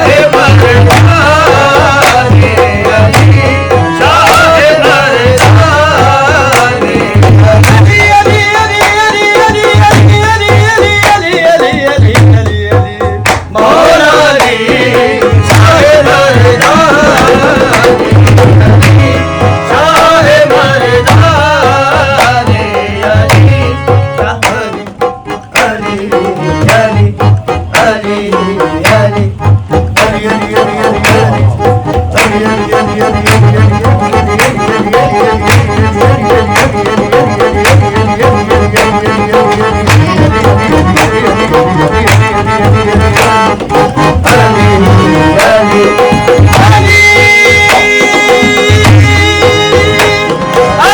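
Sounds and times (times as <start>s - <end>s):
harmonium melody: 0.0s - 50.9s
tabla rhythm: 0.0s - 50.9s.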